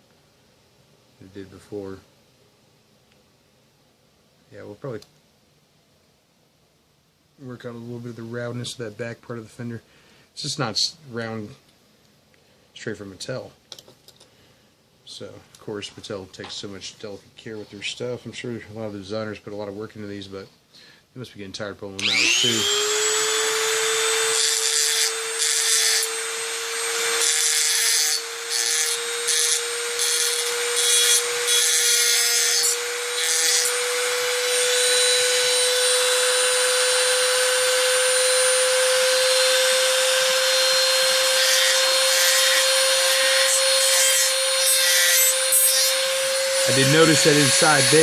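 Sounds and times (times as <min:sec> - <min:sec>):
rotary tool grinding: 0:22.0 - 0:48.0.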